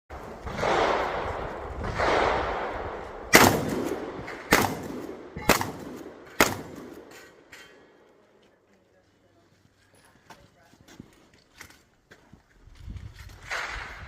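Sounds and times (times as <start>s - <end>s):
shotgun shots: 0.3s - 7.5s, 13.4s - 14.0s.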